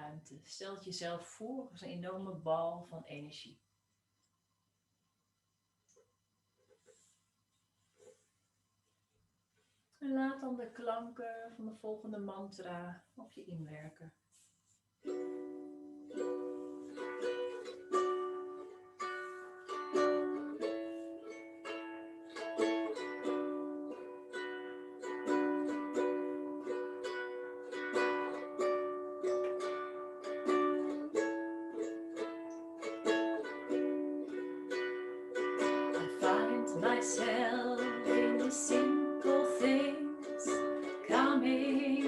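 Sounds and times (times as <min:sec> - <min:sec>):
strummed acoustic string instrument: 0:15.0 - 0:42.0.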